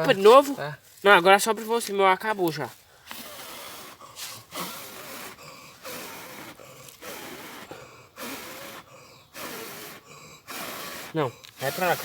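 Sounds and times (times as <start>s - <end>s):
person blowing on tinder: 3.1s - 12.0s
quick inhales: 3.8s - 11.6s.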